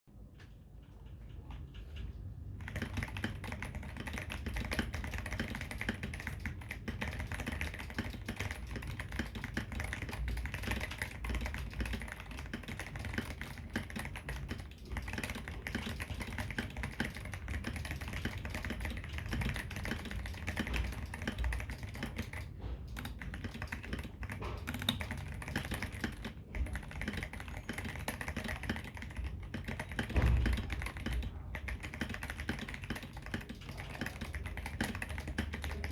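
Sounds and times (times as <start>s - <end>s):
fast typing on mechanical keyboard: 1.5s - 35.9s
keyboard thump: 30.0s - 30.9s.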